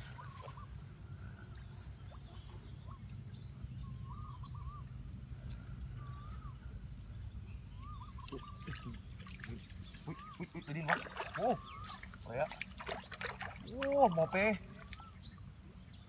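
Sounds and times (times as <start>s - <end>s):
bird warbling: 7.8s - 9.0s, 9.8s - 12.4s, 13.4s - 15.4s.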